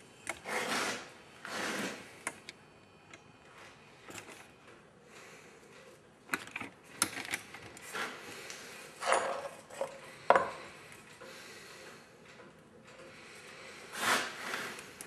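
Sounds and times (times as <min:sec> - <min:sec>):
small metal parts clinking: 0:09.0 - 0:10.0.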